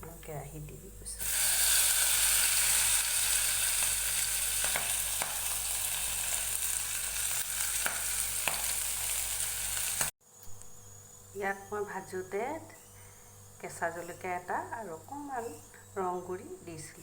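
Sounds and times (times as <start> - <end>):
food sizzling in hot oil: 1.2 - 10.2.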